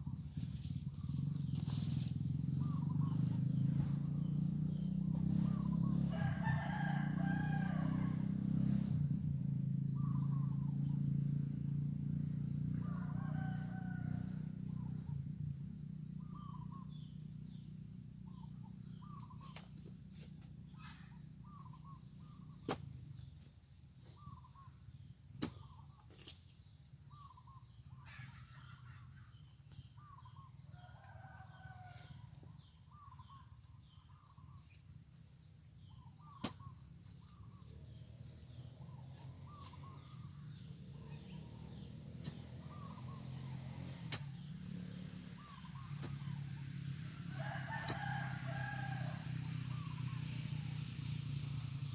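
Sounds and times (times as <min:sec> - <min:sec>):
roosters crowing: 0:01.8 - 0:11.2, 0:12.3 - 0:15.2, 0:30.7 - 0:33.3, 0:35.8 - 0:51.9.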